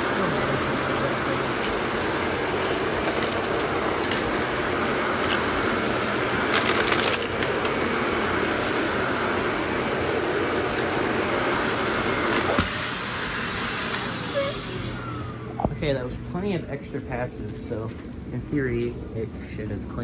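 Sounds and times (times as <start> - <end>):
vacuum cleaner running on carpet: 0.0 - 15.8.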